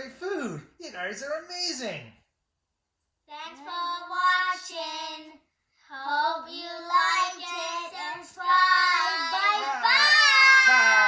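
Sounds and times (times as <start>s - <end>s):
child singing: 3.3s - 11.0s.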